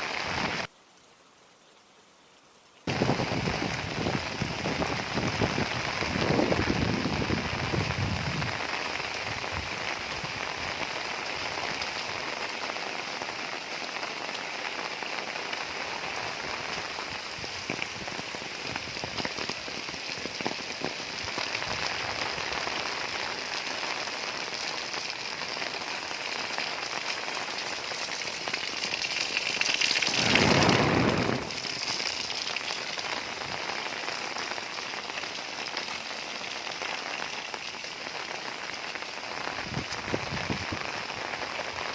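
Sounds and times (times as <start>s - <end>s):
heavy rain on a roof: 0.0s - 0.7s, 2.8s - 41.9s
rushing burst: 29.9s - 32.0s.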